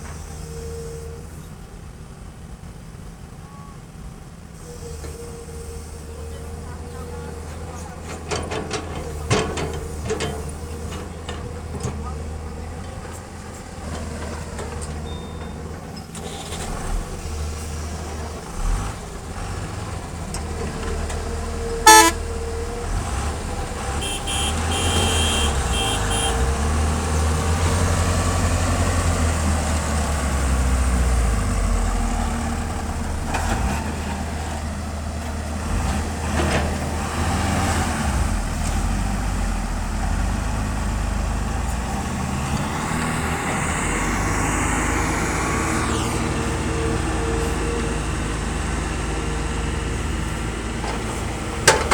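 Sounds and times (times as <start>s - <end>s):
excavator diesel engine under load: 4.1s - 51.9s
short high beeps: 21.9s - 22.2s.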